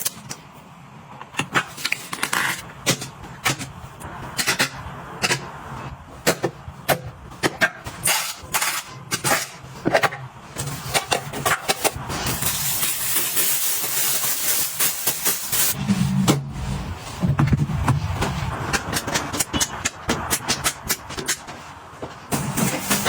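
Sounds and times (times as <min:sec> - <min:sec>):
steady hiss: 0:12.1 - 0:15.8.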